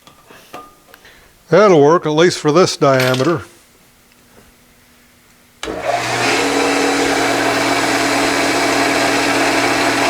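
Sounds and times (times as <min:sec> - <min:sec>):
wood lathe humming and hissing: 0:05.6 - 0:10.0.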